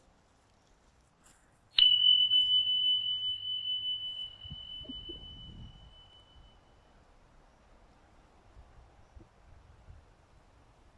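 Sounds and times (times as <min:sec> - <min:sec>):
small metal chime ringing: 0:01.8 - 0:06.9.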